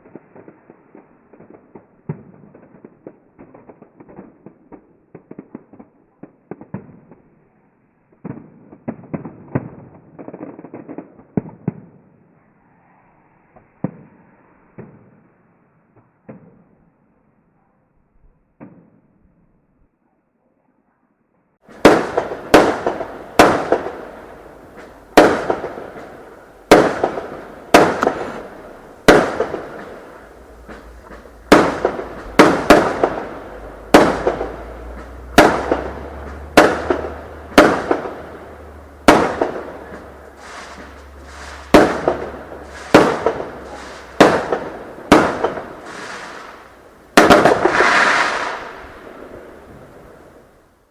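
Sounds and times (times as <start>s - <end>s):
fireworks crackling burst: 0.0s - 5.2s, 21.6s - 50.9s
fireworks bangs echoing: 21.6s - 50.6s.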